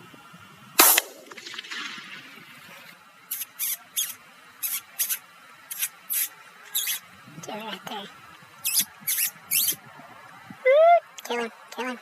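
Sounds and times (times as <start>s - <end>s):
gunshot: 0.8s - 2.5s
animal squealing: 8.6s - 9.8s.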